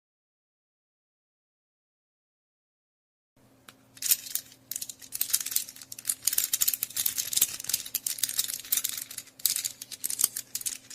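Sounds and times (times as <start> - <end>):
faint steady hum: 3.4 - 10.9
abacus beads clicking: 4.0 - 10.9.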